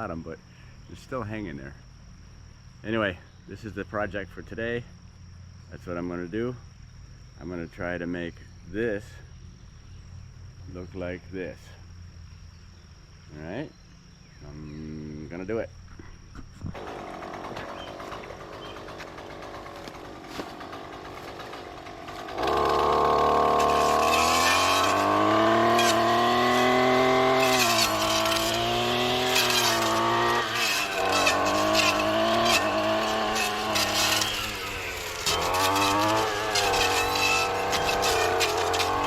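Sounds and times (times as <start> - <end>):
crackles of brush cutting: 16.4 - 39.0
weed whacker engine revving: 16.8 - 39.0.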